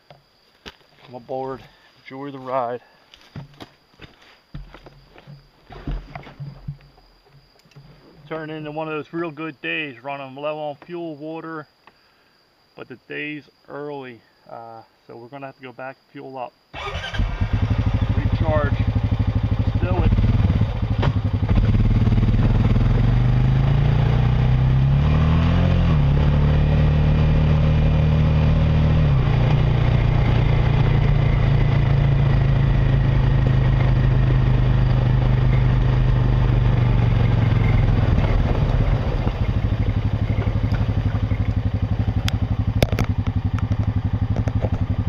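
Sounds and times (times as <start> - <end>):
atv engine accelerating: 16.8 - 45.0.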